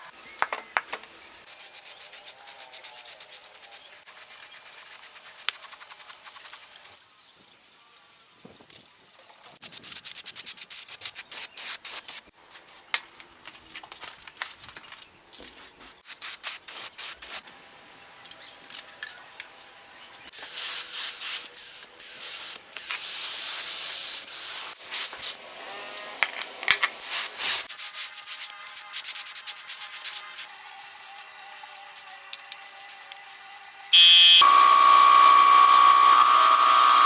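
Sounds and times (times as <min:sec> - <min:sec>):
hissing spray: 0:34.0 - 0:37.0.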